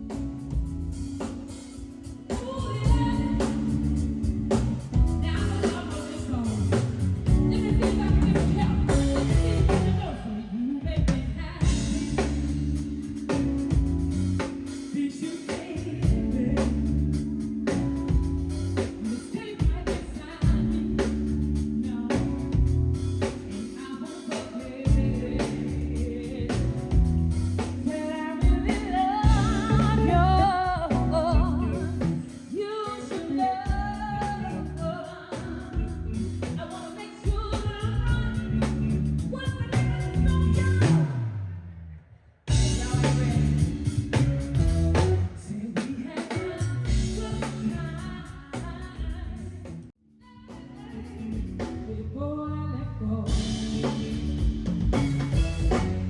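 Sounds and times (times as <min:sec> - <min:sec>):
drums and bass: 0:00.0 - 0:41.8, 0:42.5 - 0:52.3, 0:53.0 - 0:56.0
person singing: 0:02.3 - 0:04.3, 0:05.2 - 0:12.6, 0:14.7 - 0:17.4, 0:23.2 - 0:41.3, 0:42.5 - 0:49.6, 0:50.2 - 0:56.0.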